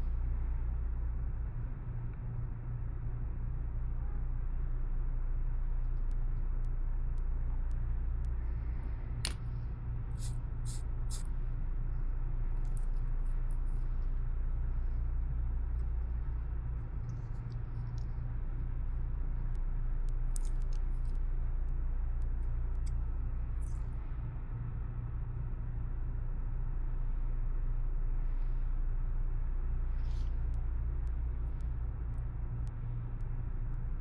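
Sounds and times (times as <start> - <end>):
low electrical hum: 0.0 - 34.0
small clicks: 20.3 - 21.2.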